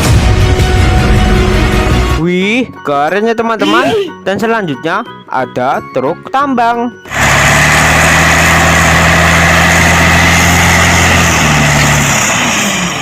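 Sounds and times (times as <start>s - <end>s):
truck engine idling: 7.1s - 13.0s.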